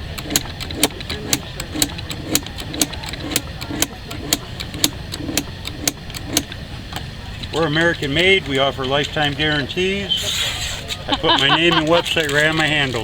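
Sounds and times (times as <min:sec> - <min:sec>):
knife scraping on honing rods: 0:00.0 - 0:06.5.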